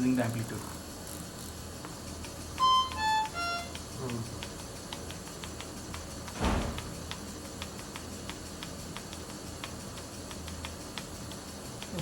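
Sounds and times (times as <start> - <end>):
ventilator humming and ticking: 0.0 - 12.0
loud thump: 6.4 - 7.0.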